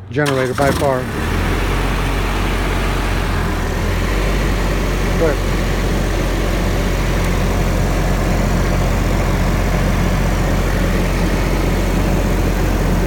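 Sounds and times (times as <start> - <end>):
diesel generator humming: 0.0 - 13.0.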